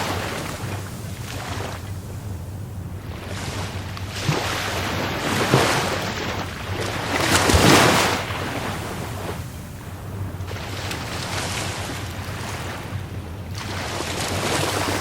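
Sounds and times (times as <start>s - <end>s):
waves breaking: 0.0s - 15.0s
low rumble: 8.3s - 15.0s.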